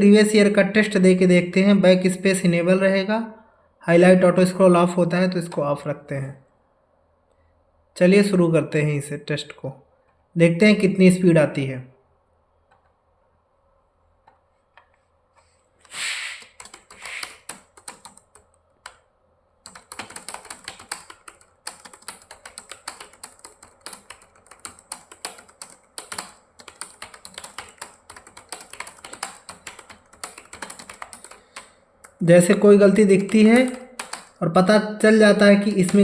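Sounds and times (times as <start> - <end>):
computer keyboard typing: 16.4 - 34.4, 35.6 - 36.0.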